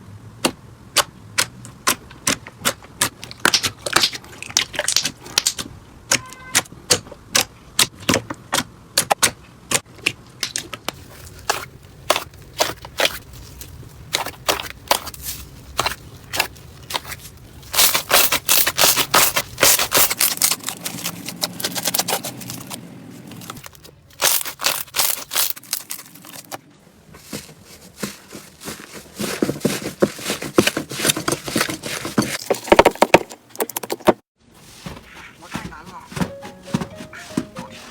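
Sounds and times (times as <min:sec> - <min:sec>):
slime popping and crackling: 0:01.8 - 0:06.3, 0:24.2 - 0:26.2.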